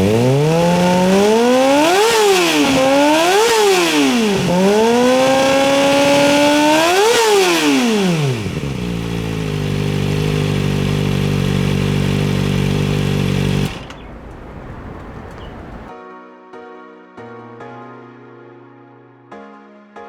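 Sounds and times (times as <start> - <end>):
motorcycle engine revving and idling: 0.0 - 15.9.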